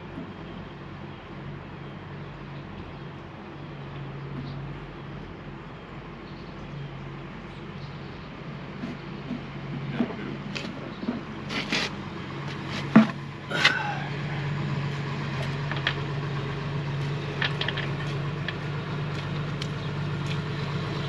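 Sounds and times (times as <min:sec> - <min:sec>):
tractor engine idling: 0:09.6 - 0:21.0
metal clanks and knocks: 0:12.8 - 0:13.2, 0:17.4 - 0:18.6.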